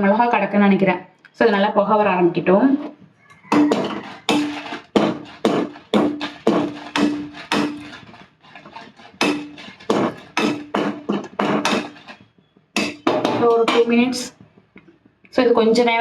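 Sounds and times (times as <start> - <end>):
metal utensil knocking metal pan: 3.5 - 14.3.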